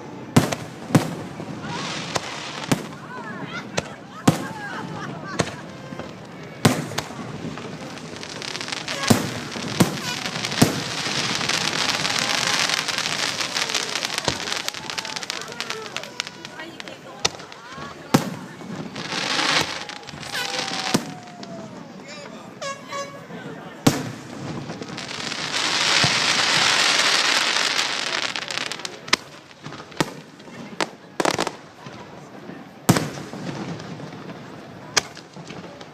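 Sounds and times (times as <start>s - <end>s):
firework crackling: 0.0s - 35.9s
firework shells bursting: 5.4s - 21.2s.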